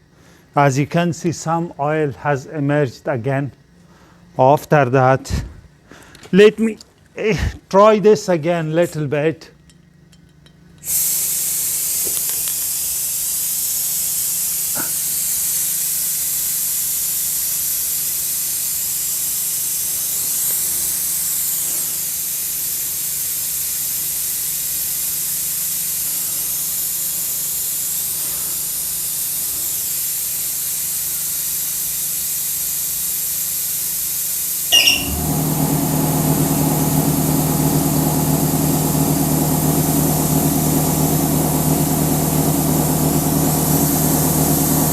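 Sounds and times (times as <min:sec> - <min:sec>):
oil extractor hissing: 0:10.8 - 0:44.9
machine humming: 0:34.7 - 0:44.9.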